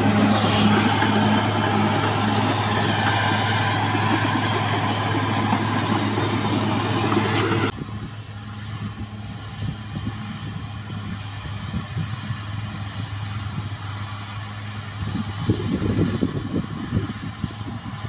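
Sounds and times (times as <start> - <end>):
bulldozer diesel engine running: 0.0 - 7.7.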